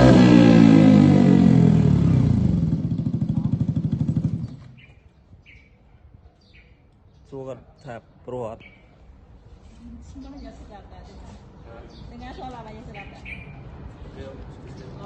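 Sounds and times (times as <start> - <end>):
loud motorcycle engine chugging: 0.0 - 4.9
faint bird chirps: 4.4 - 9.1.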